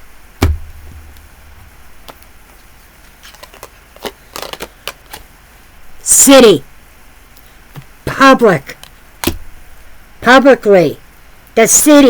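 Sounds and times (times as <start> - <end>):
cards being shuffled: 0.4 - 5.3.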